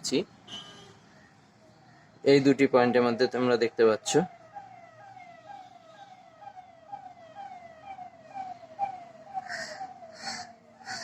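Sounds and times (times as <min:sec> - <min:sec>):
falling siren-like tone: 0:03.3 - 0:11.0.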